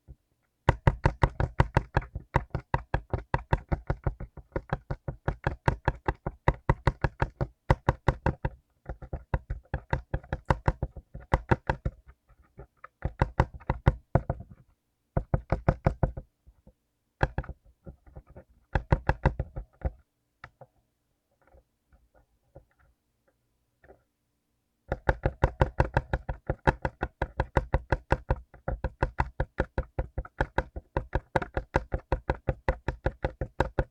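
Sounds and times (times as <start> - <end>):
typing on clicky mechanical keyboard: 24.9 - 33.9.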